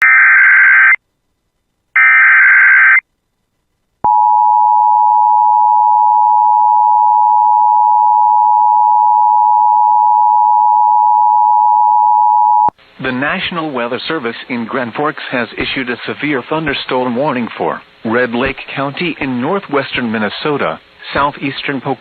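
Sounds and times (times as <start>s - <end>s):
steady attention tone: 4.0s - 12.7s.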